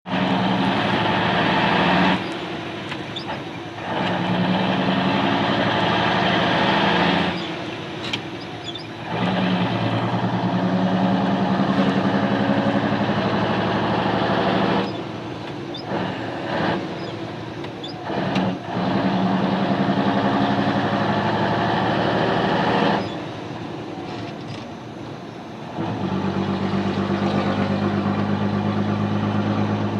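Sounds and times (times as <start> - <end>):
truck diesel engine rumbling: 0.0 - 29.9.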